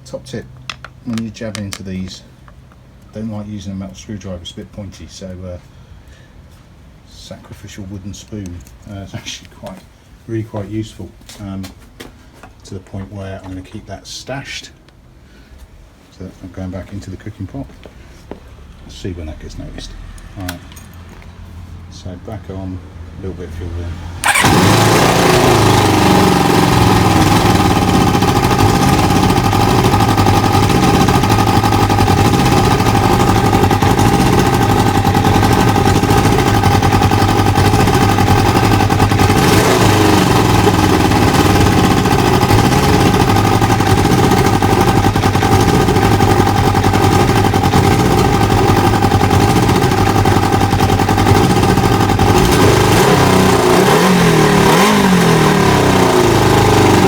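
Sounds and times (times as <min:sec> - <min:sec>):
motorcycle engine idling: 0:24.2 - 0:57.0.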